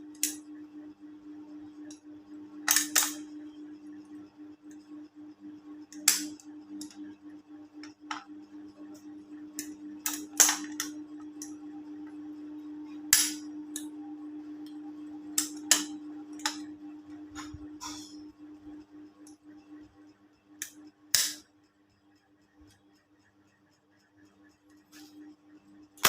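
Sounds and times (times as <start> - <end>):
steady low hum: 0.0 - 26.0
metal parts and tools clacking: 10.0 - 10.9.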